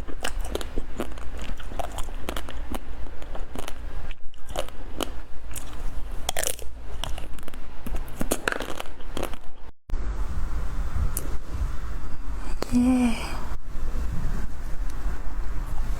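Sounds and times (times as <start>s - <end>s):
chocolate shell crunching: 0.0s - 9.6s.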